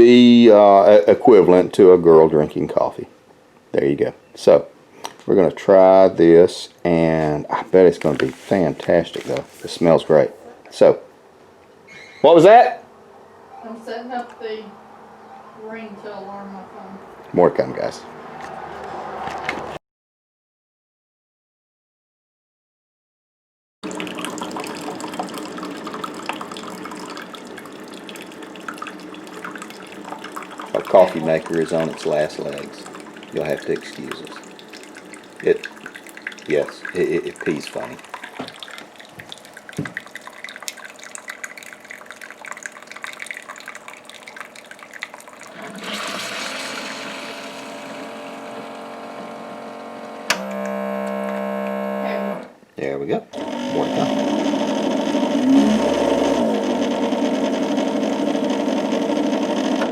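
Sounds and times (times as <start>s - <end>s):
coffee maker dripping and gurgling: 23.8s - 52.4s, 53.3s - 59.9s.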